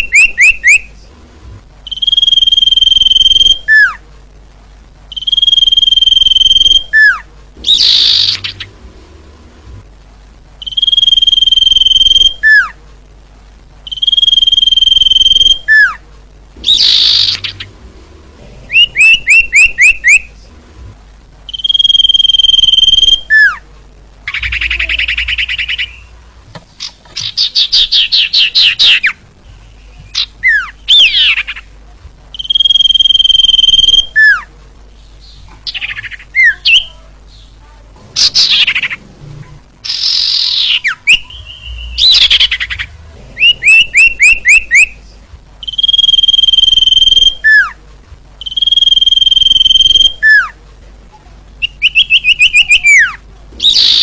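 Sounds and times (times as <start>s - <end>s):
bird whistling and trilling: 0.0s - 0.8s, 1.9s - 4.0s, 5.1s - 8.6s, 10.6s - 12.7s, 13.9s - 16.0s, 16.6s - 17.6s, 18.7s - 20.3s, 21.5s - 23.6s, 24.4s - 26.1s, 30.1s - 31.5s, 32.4s - 34.4s, 39.9s - 42.8s, 43.4s - 45.0s, 45.6s - 47.8s, 48.4s - 50.5s, 51.6s - 54.0s.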